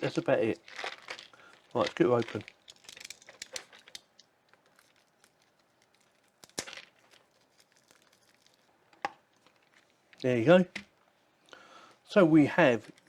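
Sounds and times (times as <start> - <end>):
packaging crinkling: 0.0 - 8.7
packaging tearing rustle: 0.0 - 8.7.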